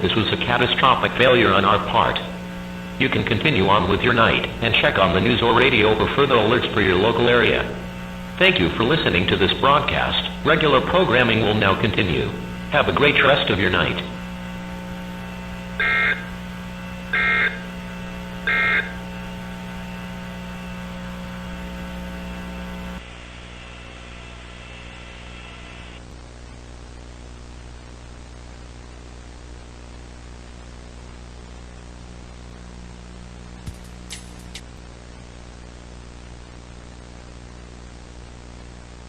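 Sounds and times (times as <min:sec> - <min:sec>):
electrical hum: 0:00.0 - 0:39.0
data tone bursts: 0:15.4 - 0:19.2.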